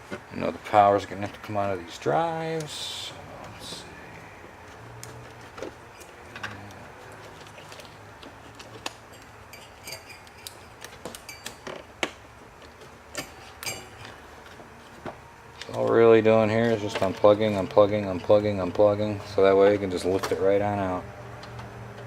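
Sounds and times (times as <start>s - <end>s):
low steady hum: 0.0s - 22.0s.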